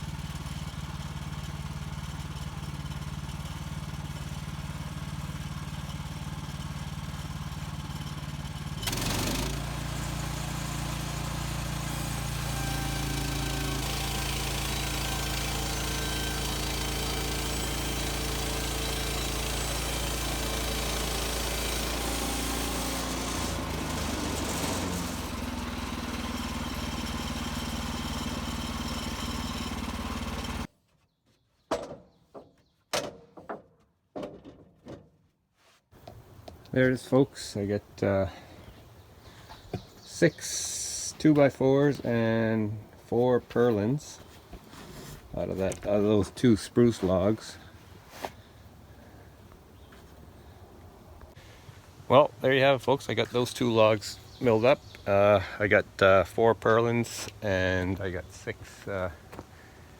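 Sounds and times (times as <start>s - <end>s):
gas engine running: 0.0s - 30.7s
band blade sawing through log: 8.8s - 30.7s.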